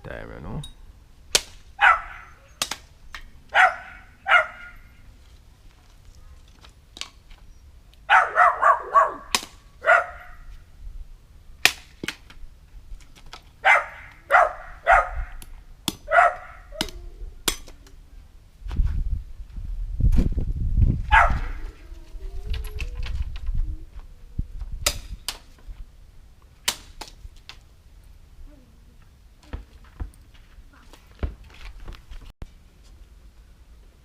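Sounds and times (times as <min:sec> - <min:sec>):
dog barking: 0:01.8 - 0:02.4, 0:03.5 - 0:04.9, 0:08.1 - 0:10.4, 0:13.6 - 0:15.4, 0:16.1 - 0:16.8, 0:21.1 - 0:21.6.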